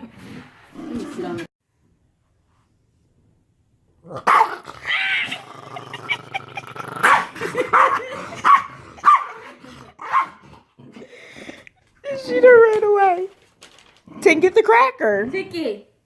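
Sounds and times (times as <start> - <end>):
dog growling: 4.0 - 11.5
dog barking: 4.2 - 4.6, 7.0 - 10.4.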